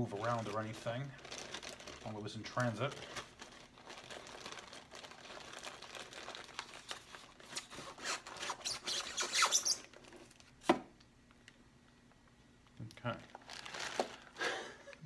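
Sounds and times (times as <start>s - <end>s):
foam squeaking against cardboard: 7.4s - 9.9s.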